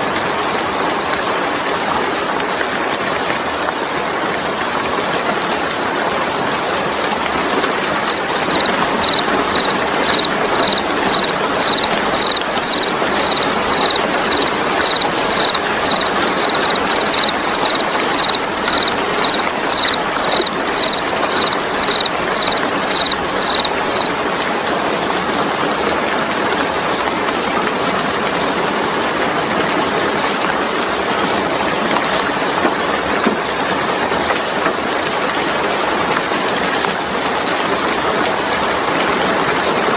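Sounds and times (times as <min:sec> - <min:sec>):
steady rain: 0:00.0 - 0:39.9
high pure chirp: 0:08.1 - 0:24.1.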